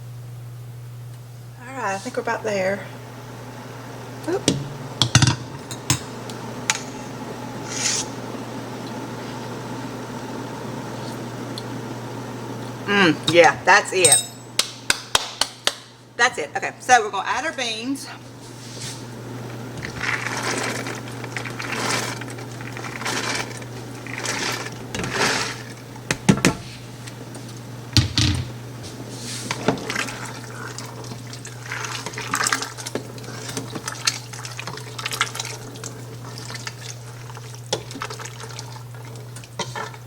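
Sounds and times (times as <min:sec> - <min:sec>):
knocks against pot: 0:04.4 - 0:06.0
beans sloshing in sauce: 0:19.8 - 0:25.8, 0:28.9 - 0:40.0.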